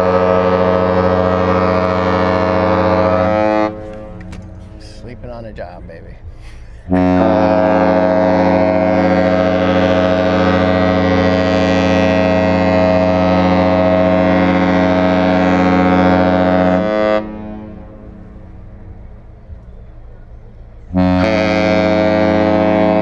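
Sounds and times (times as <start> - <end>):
deep ship horn blast: 0.0 - 4.8, 6.8 - 19.6, 20.7 - 23.0.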